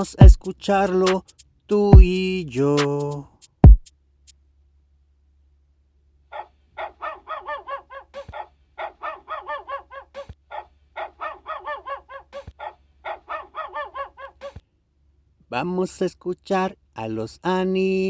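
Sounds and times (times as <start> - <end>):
dog barking: 6.3 - 14.6.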